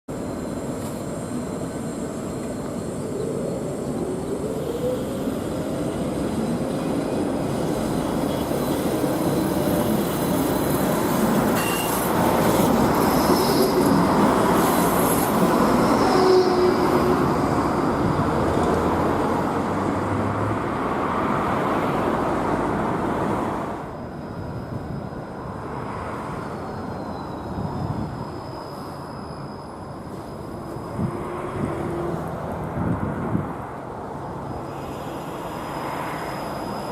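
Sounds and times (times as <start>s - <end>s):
tram wheels rumbling on rails: 0.1s - 36.9s
high flange squeals: 0.3s - 17.8s, 24.0s - 32.4s, 34.2s - 36.9s.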